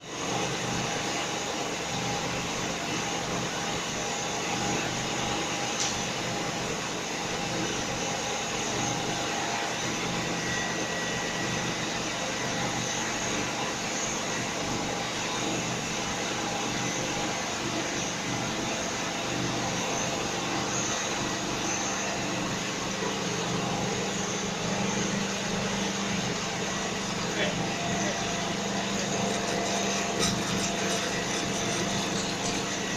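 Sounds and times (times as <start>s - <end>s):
machine whirring: 19.4s - 32.9s.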